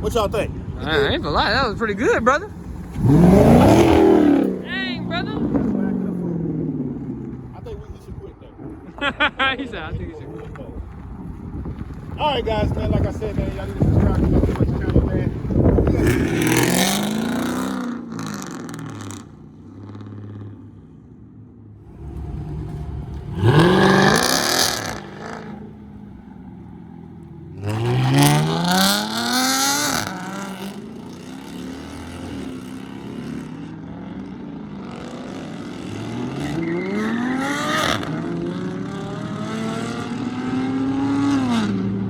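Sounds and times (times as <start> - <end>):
car engine revving: 0.1 - 7.6, 11.1 - 21.0, 21.7 - 42.0.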